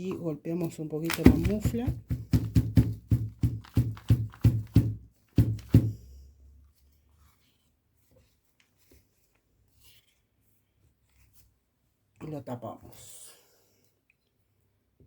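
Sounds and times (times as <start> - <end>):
flask knocking on bench: 1.1 - 5.9
faint handling sounds: 3.2 - 12.2.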